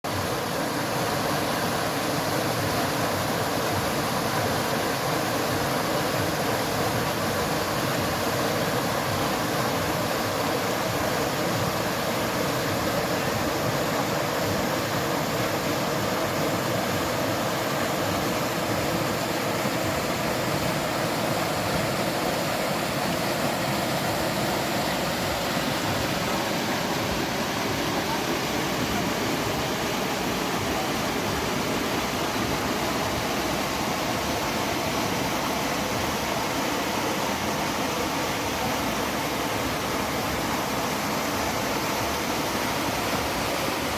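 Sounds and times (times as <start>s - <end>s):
stream flowing over rocks: 0.0s - 43.9s.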